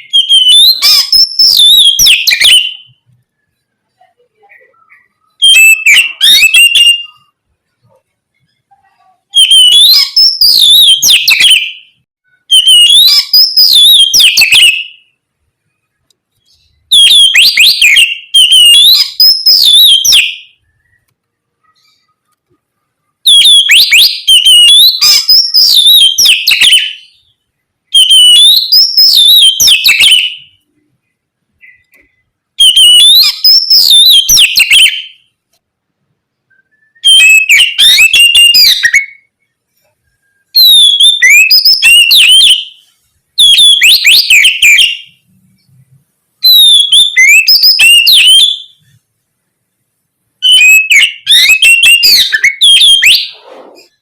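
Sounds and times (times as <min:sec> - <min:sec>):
bird whistling song: 0:00.0 - 0:03.6, 0:04.5 - 0:07.4, 0:09.3 - 0:15.2, 0:16.4 - 0:21.1, 0:23.2 - 0:30.6, 0:31.6 - 0:35.3, 0:36.5 - 0:39.3, 0:40.0 - 0:45.2, 0:46.4 - 0:49.0, 0:50.4 - 0:54.0.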